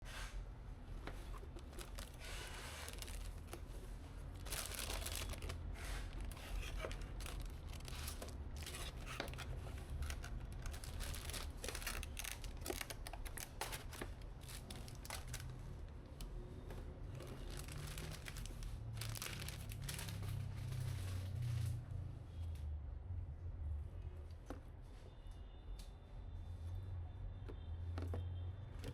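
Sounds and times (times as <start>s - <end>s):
plastic and cardboard rustling: 0.9s - 21.8s.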